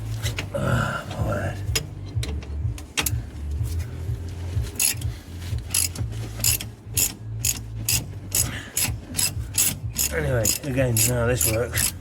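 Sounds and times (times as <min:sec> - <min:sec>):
ratchet wrench clicking: 0:04.8 - 0:05.1, 0:05.7 - 0:12.0.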